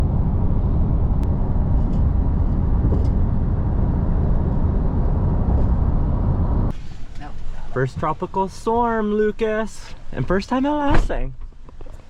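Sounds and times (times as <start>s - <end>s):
strong wind buffeting microphone: 0.0s - 6.8s.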